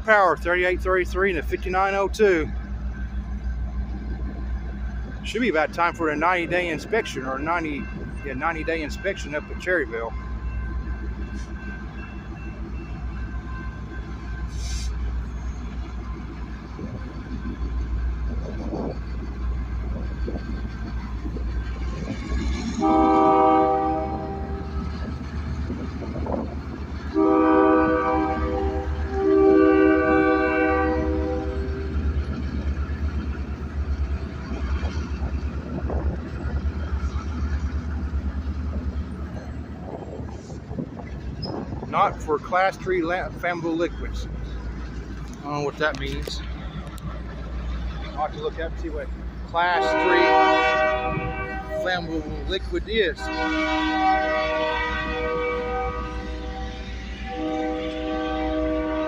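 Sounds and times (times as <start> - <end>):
freight train rumbling by: 0.0 - 59.0
locomotive diesel engine throb: 0.0 - 59.0
short hiss: 14.5 - 15.1
locomotive horn chord: 22.7 - 24.8, 27.1 - 32.0, 49.6 - 59.0.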